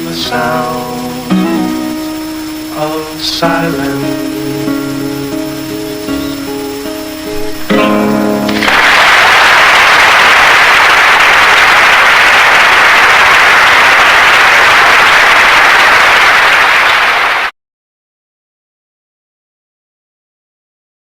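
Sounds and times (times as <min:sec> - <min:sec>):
acoustic guitar chord: 0:00.0 - 0:08.9
audience applause: 0:08.5 - 0:17.5.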